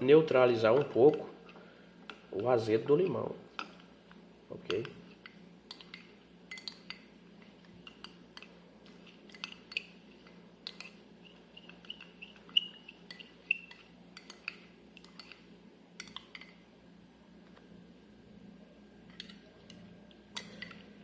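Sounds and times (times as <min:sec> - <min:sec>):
metal spoon clinking cup: 0:05.7 - 0:07.0.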